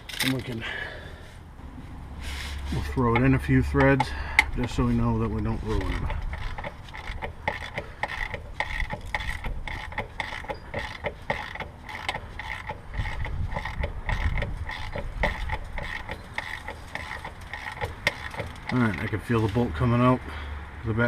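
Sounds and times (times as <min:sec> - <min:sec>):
hand ratchet clicking: 0:03.0 - 0:19.5.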